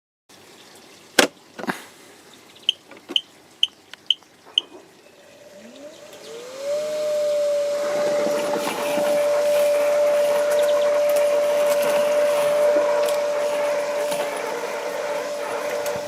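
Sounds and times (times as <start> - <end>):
lawnmower running noise: 4.6 - 16.0
blade motor whine: 5.2 - 16.0.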